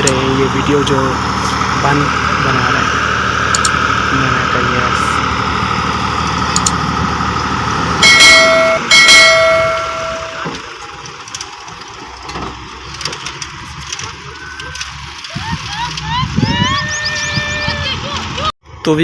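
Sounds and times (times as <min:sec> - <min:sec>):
engine running: 0:00.0 - 0:19.0
vehicle horn blasts: 0:08.0 - 0:10.5.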